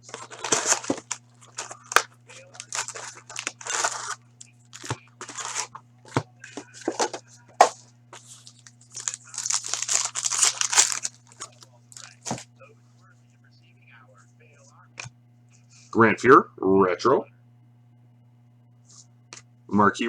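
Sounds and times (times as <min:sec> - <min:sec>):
packaging tearing and crinkling: 0:00.0 - 0:05.8, 0:06.5 - 0:12.4
low electrical hum: 0:00.0 - 0:20.0.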